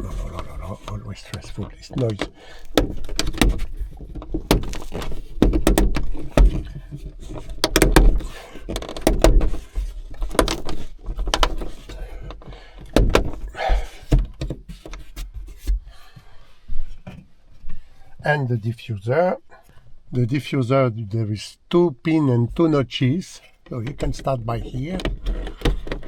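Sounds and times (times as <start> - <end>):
plastic trim clicks and knocks: 1.4 - 9.6, 10.2 - 11.7.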